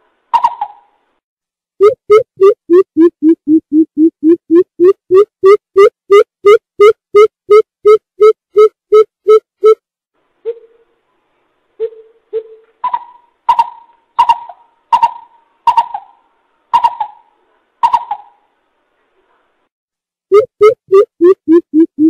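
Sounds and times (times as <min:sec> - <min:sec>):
bird hooting: 0:11.8 - 0:16.2, 0:16.8 - 0:18.4.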